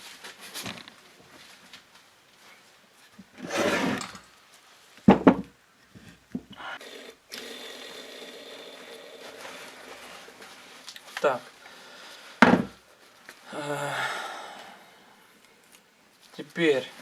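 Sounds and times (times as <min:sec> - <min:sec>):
rustling rub: 0:09.1 - 0:11.2
sharp knocks: 0:12.4 - 0:12.8.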